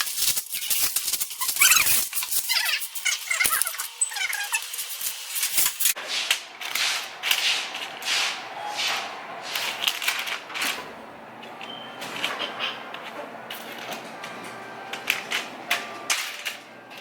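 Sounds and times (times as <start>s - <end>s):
rustling scraping strokes: 4.7s - 10.0s.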